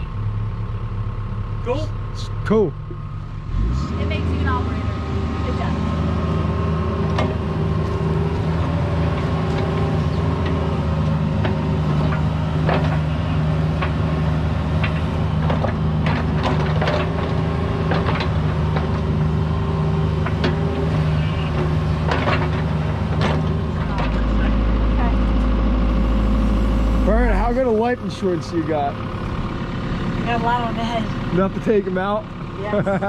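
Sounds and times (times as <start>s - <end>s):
excavator diesel engine running: 0.0s - 33.0s.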